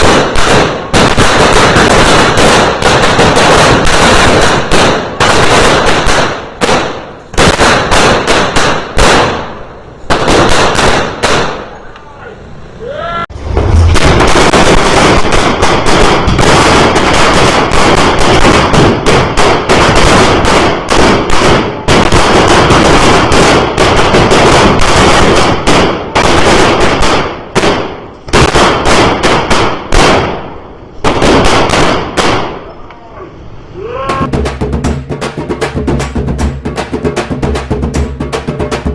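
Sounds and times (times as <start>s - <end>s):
firecrackers crackling: 0.0s - 12.1s, 13.4s - 33.0s, 33.6s - 38.9s.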